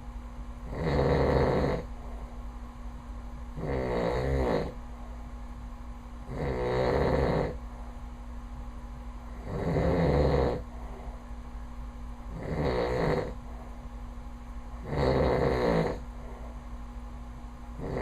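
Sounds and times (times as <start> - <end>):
man snoring: 0.7 - 1.9, 3.6 - 4.8, 6.3 - 7.6, 9.4 - 10.6, 12.4 - 13.4, 14.8 - 16.0, 17.8 - 18.0.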